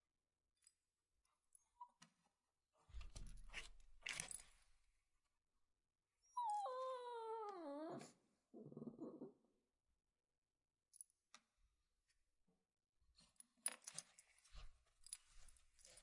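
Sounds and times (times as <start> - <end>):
puppy whining: 6.2 - 9.4.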